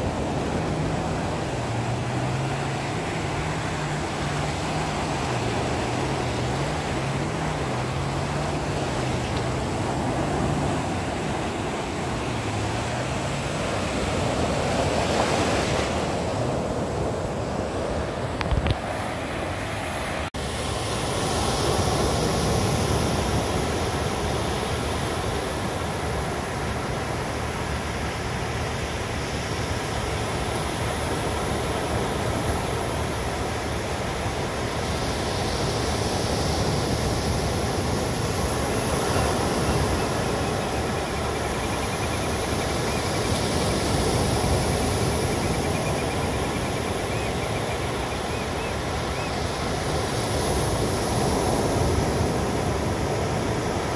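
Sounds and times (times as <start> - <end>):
ocean surf roaring: 0.0 - 53.9.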